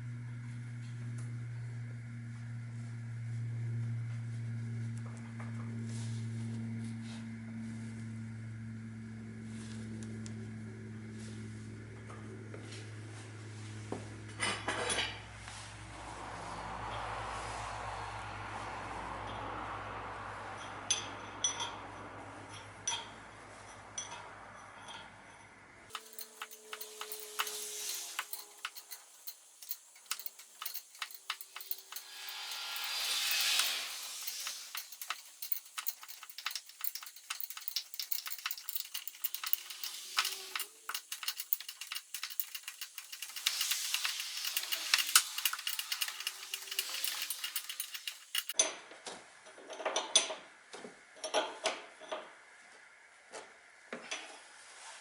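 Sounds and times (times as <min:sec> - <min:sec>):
metal tools clinking: 0:25.9 - 0:48.6.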